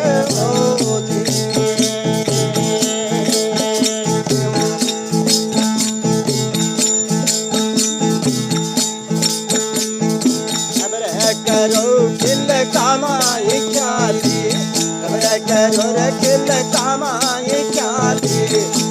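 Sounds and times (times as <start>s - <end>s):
jingling percussion beat: 0.0s - 18.9s
steady held tones: 0.0s - 18.9s.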